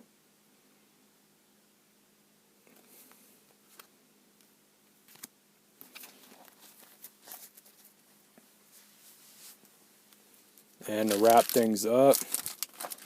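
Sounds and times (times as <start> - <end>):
trading cards rustling and clicking: 10.6 - 13.0.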